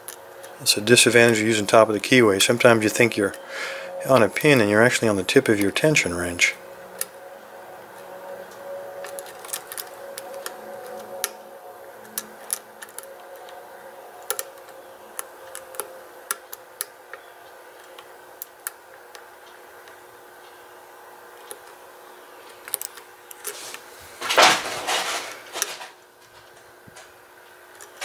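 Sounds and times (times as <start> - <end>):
lock pick clicking and scraping: 9.0 - 11.4, 12.0 - 13.6, 14.2 - 20.0, 22.5 - 23.9.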